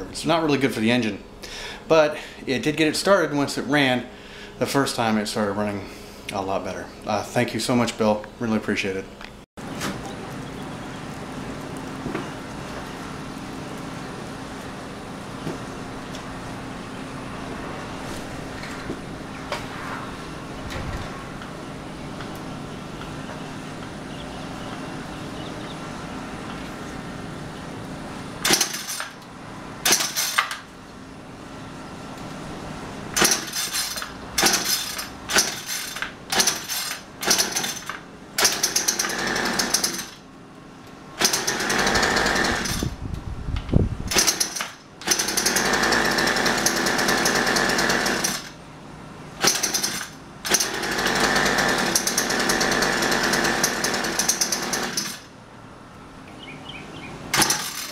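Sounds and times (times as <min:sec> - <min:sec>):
string trimmer engine revving: 0:33.2 - 0:40.2, 0:41.2 - 0:43.0, 0:44.1 - 0:48.5, 0:49.4 - 0:55.2, 0:57.3 - 0:57.9.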